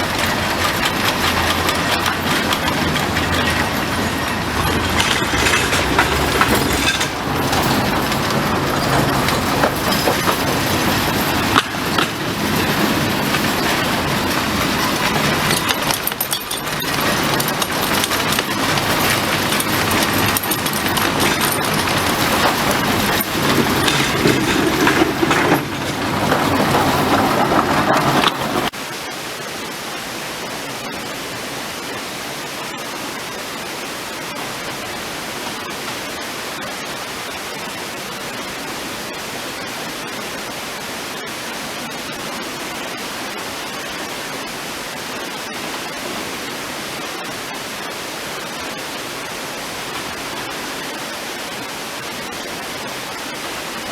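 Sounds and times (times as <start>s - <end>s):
ore cars clattering on rails: 0.0s - 28.8s, 48.4s - 51.4s, 52.0s - 53.9s
steady rushing hiss: 0.0s - 53.9s.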